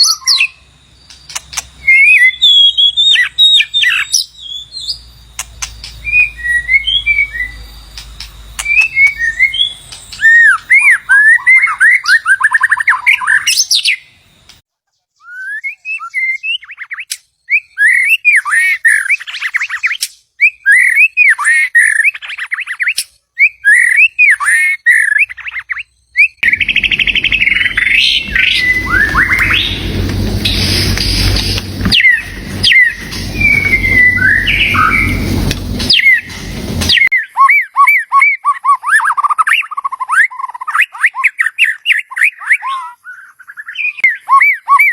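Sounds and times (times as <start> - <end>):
bird singing whistled phrases: 0.0 - 14.1, 15.2 - 44.9
rough background rumble and hiss: 26.4 - 37.1.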